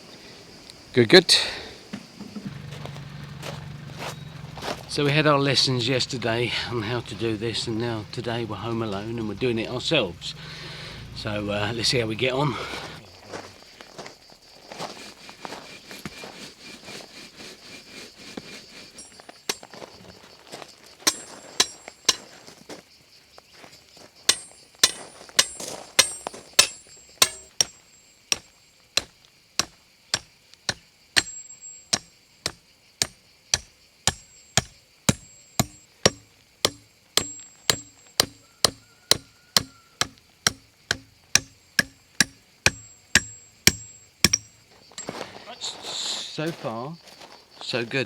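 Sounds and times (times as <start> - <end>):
hammer blows on metal: 31.2 - 44.6.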